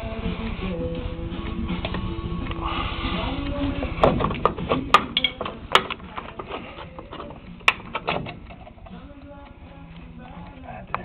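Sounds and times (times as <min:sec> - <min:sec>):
brake springs clinking: 0:04.1 - 0:08.9.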